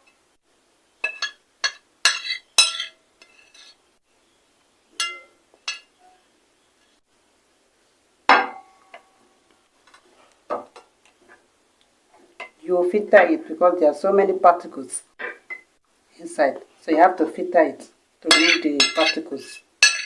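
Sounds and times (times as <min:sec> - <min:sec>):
kitchen utensils clinking: 0:01.0 - 0:03.8, 0:05.0 - 0:05.9, 0:18.2 - 0:20.0.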